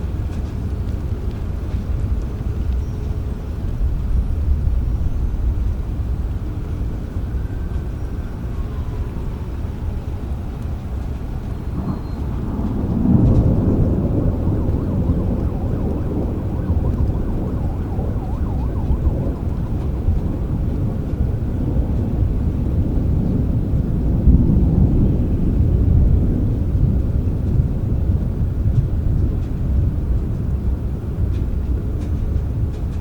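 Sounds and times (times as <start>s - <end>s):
steady rain: 0.0s - 33.0s
low rolling thunder: 3.6s - 30.2s.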